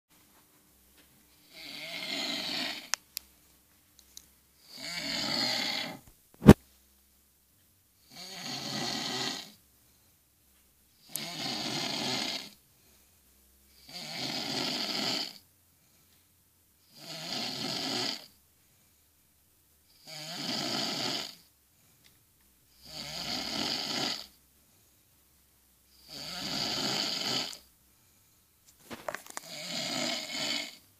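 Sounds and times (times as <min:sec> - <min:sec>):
person snoring: 0:01.3 - 0:02.9, 0:04.6 - 0:06.6, 0:08.1 - 0:09.6, 0:11.0 - 0:12.6, 0:13.7 - 0:15.4, 0:16.8 - 0:18.3, 0:19.9 - 0:21.5, 0:22.8 - 0:24.4, 0:25.9 - 0:27.7, 0:29.4 - 0:30.8.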